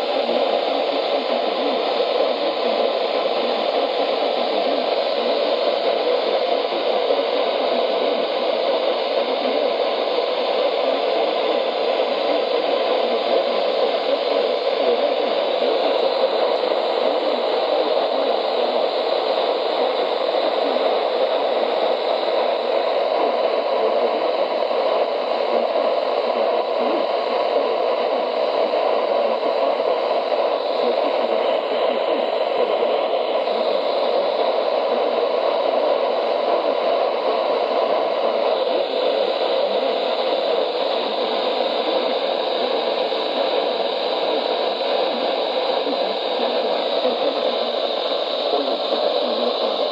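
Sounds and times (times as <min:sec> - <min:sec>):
radio static hiss: 0:00.0 - 0:49.9.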